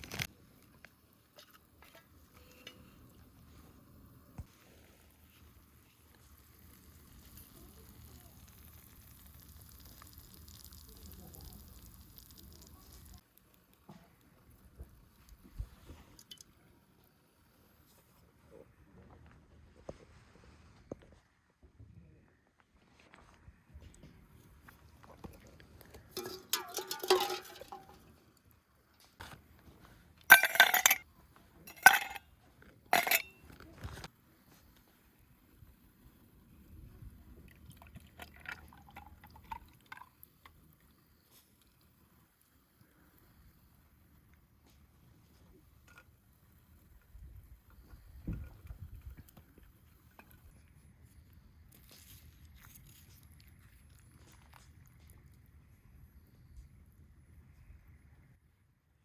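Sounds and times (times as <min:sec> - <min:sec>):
food sizzling in a pan: 0:04.6 - 0:13.2
metal cookware clattering: 0:26.1 - 0:28.1, 0:30.3 - 0:31.0, 0:31.7 - 0:32.2, 0:32.9 - 0:33.4.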